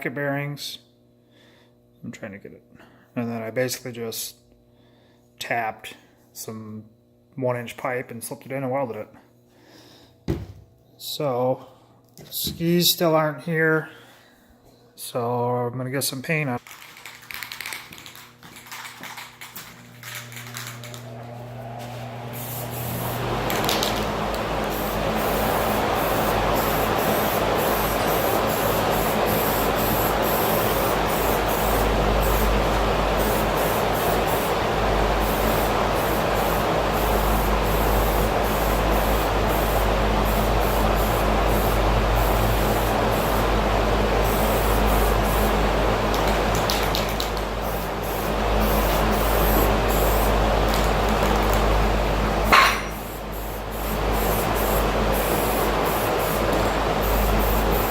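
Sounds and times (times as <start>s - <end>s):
steady hum: 0.0s - 57.9s
paint spray hiss: 22.3s - 51.8s, 52.4s - 57.9s.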